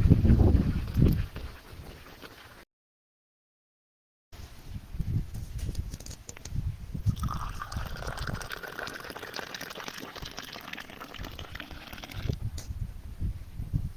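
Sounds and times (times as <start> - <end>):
tea pouring into glass: 7.1 - 12.4.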